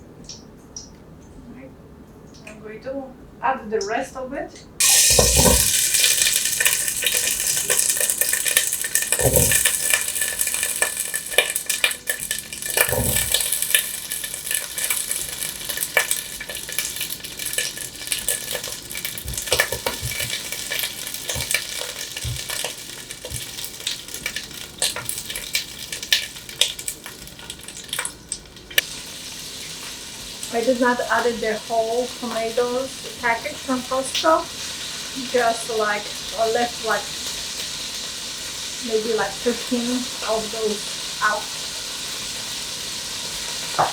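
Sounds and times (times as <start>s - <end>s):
tomatoes thumping into pan: 4.8s - 25.3s
tomatoes sizzling in hot oil: 4.8s - 43.9s
utensil clicking against pan: 5.1s - 28.8s.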